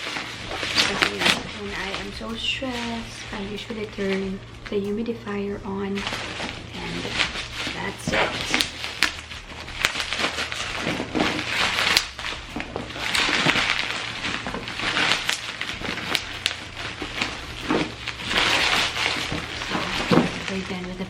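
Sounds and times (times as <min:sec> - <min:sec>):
plastic wrap crinkling and tearing: 0:00.0 - 0:21.0.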